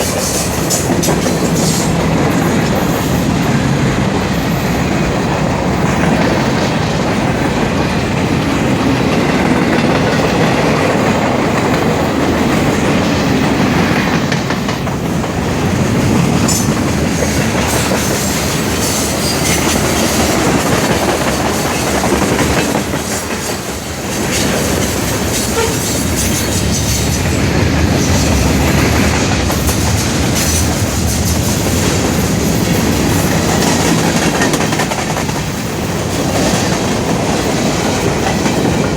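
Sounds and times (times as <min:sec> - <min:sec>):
freight train wheels on rails: 0:00.0 - 0:38.9.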